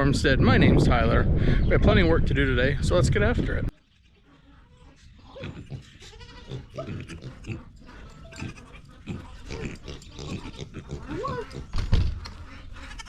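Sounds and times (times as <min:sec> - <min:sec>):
livestock calling: 0:03.8 - 0:13.0.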